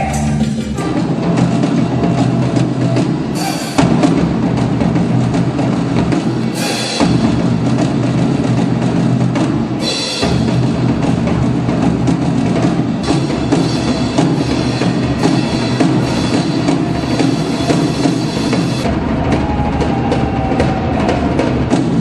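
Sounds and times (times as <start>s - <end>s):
up-tempo music with drums and bass: 0.0s - 1.4s.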